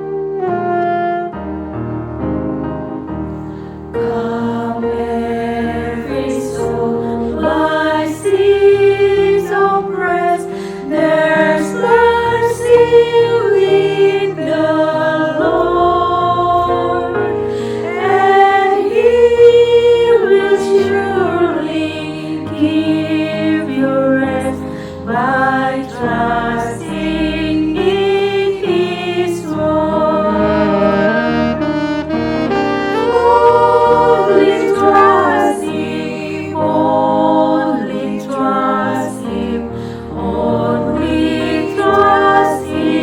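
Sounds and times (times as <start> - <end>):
vocal group singing in harmony: 3.8 - 43.0
instrumental accompaniment: 24.7 - 43.0.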